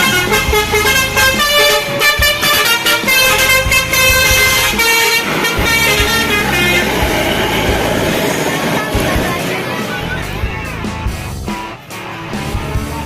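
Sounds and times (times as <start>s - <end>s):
multi-tone bus horn tune: 0.0s - 10.4s
traffic noise: 0.0s - 13.0s.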